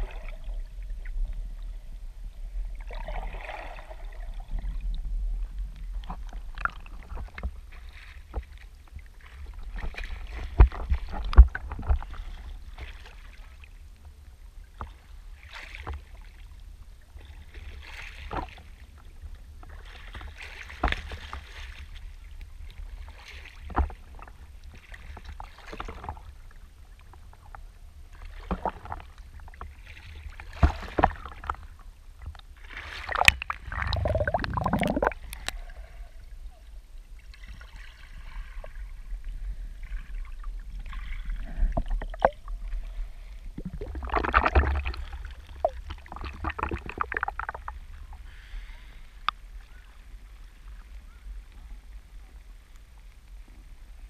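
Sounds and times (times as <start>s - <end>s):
low wind-like rumble: 0.0s - 15.4s, 33.3s - 54.0s.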